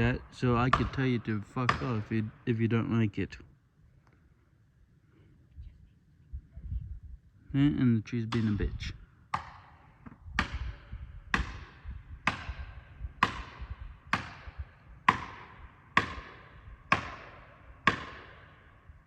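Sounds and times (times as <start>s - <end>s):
hammer striking metal wedge: 8.3s - 8.7s, 10.4s - 18.7s.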